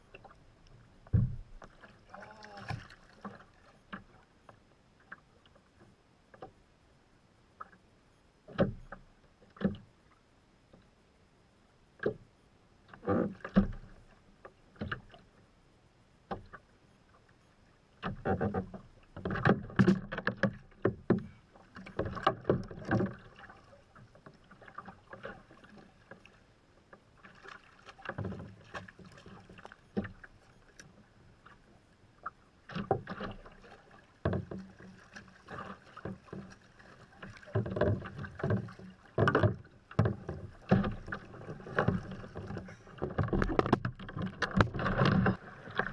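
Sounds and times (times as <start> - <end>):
water splashing against kayak hull: 0.0 - 6.6, 12.0 - 15.4, 18.0 - 45.9
bumps and thuds: 1.1 - 1.6.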